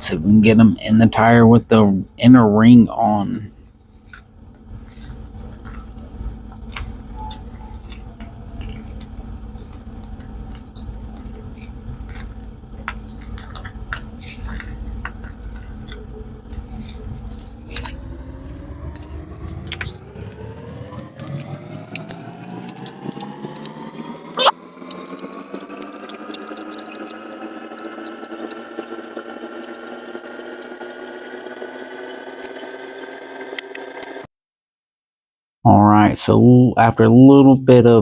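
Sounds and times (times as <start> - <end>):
steady hum: 14.1 - 34.3
small parts clicking and tapping: 17.7 - 34.3.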